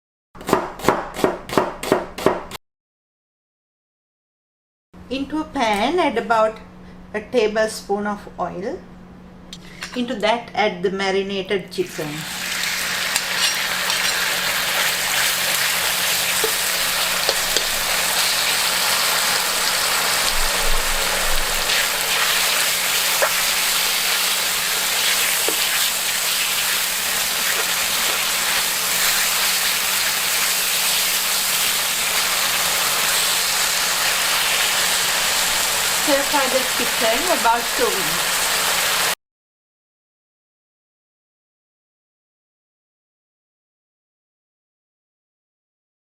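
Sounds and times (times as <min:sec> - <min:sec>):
chicken sizzling in hot oil: 0:11.9 - 0:39.2
steady low hum: 0:13.8 - 0:30.4.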